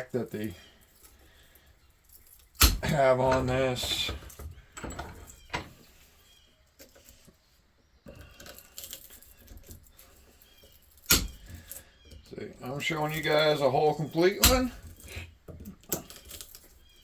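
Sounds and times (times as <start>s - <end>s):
metal motor parts handled: 0.8s - 6.0s, 8.1s - 12.2s, 14.2s - 17.0s
sharp clicks and knocks: 2.4s - 5.8s, 11.0s - 12.2s, 14.4s - 16.7s.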